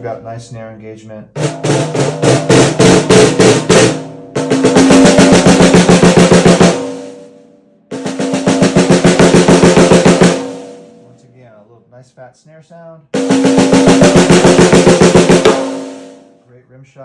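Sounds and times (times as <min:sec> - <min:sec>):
snare drum strokes and rolls: 0:01.4 - 0:07.3, 0:07.9 - 0:11.0, 0:13.2 - 0:16.3.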